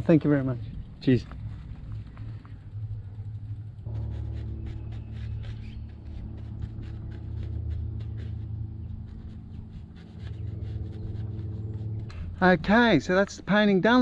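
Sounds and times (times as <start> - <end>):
vehicle engine idling: 0.0 - 13.3
quick light scratching ticks: 1.2 - 12.5.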